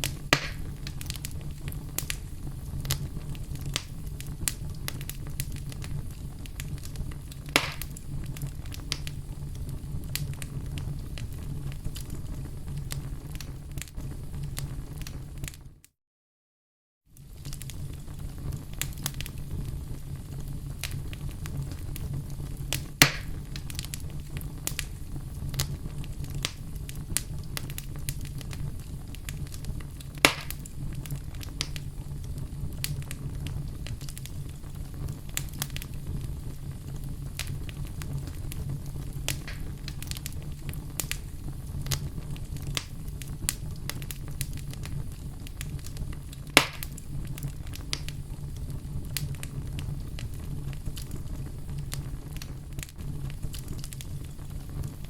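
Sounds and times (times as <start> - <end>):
loud sharp pops: 0.0 - 1.2, 7.5 - 8.0, 22.8 - 23.4, 30.2 - 30.7, 39.3 - 39.8, 46.6 - 47.0
fireplace fire crackling: 0.0 - 15.8, 17.1 - 55.0.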